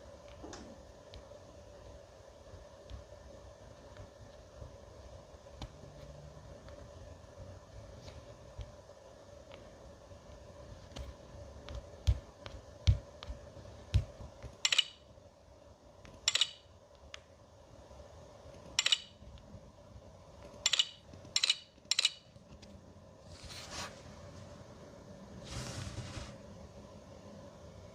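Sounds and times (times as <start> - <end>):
faint steady hum: 0.0 - 27.9
sharp clicking bursts: 14.5 - 15.0, 16.1 - 16.7, 18.8 - 19.2, 20.6 - 22.3.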